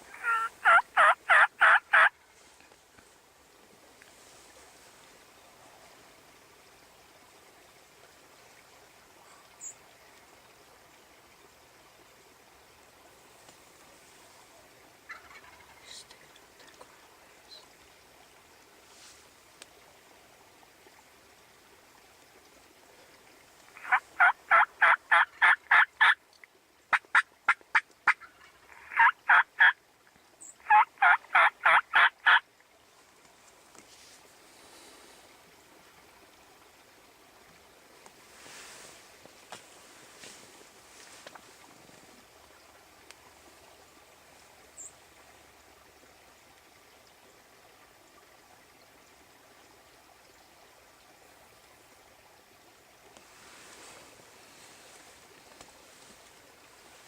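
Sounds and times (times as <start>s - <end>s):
faint outdoor ambience hiss: 0.0s - 57.0s
turkey call yelps: 0.1s - 2.1s, 15.1s - 15.7s, 23.8s - 26.2s, 27.1s - 29.8s, 30.6s - 32.4s.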